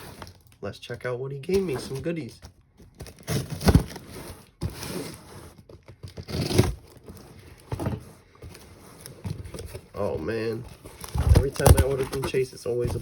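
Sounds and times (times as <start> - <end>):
packaging tearing and crinkling: 2.9 - 5.1, 10.9 - 13.0.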